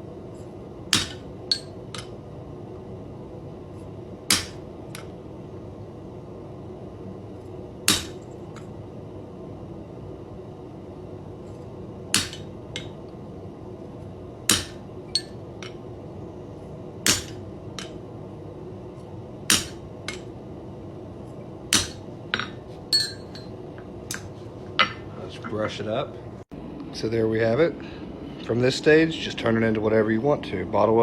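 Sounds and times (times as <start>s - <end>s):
low hum: 0.0s - 25.4s
hammer striking punch into iron: 0.9s - 2.1s, 4.3s - 4.6s, 7.9s - 8.3s, 12.1s - 12.9s, 14.5s - 15.4s, 17.1s - 17.9s, 19.5s - 20.2s, 21.7s - 23.4s.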